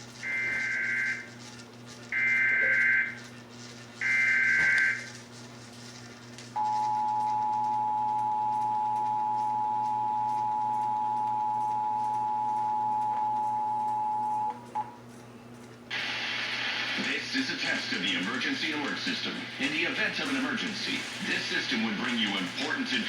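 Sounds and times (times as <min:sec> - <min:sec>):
two-tone attention signal: 0:00.2 - 0:01.3, 0:02.2 - 0:03.2, 0:04.0 - 0:05.1.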